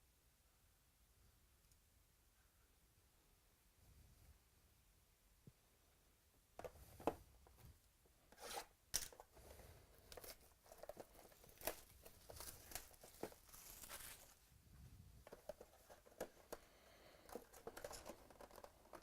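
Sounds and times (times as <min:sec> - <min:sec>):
cards being handled: 0:08.4 - 0:14.4, 0:15.2 - 0:19.0
wrappers tearing and crinkling: 0:10.8 - 0:14.4.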